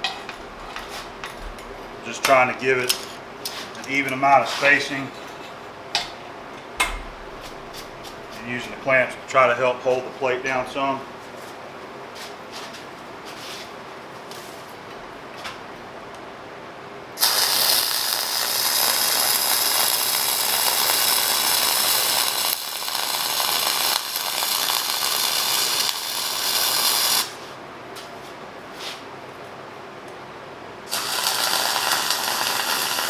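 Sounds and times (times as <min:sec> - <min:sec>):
welding arc crackling: 0:17.2 - 0:27.4, 0:30.9 - 0:33.0.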